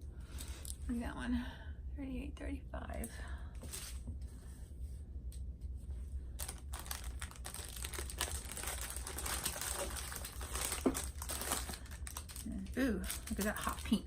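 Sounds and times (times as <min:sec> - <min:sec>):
plastic bags crinkling: 0:06.4 - 0:14.0.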